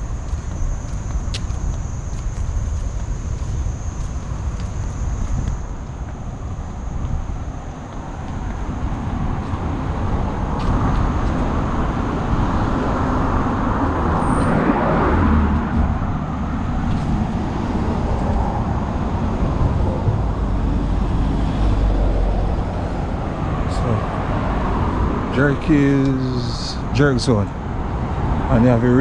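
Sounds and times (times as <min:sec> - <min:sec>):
traffic hum: 0:00.0 - 0:29.0
vehicle passing close: 0:09.0 - 0:28.9.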